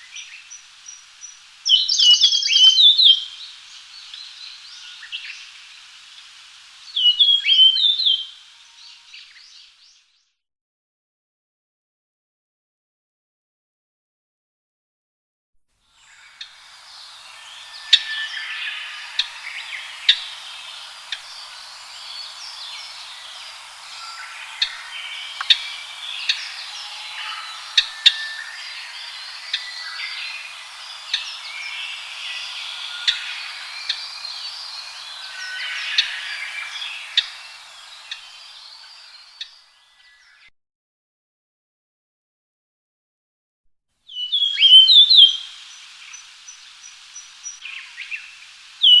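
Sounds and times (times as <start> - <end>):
birds chirping and whistling: 16.0 - 39.8
sharp loud bird notes: 16.0 - 40.2.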